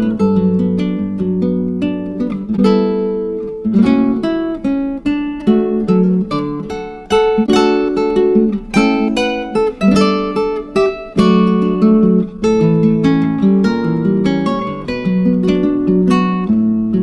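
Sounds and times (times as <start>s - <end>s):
acoustic guitar strumming: 0.0s - 17.0s.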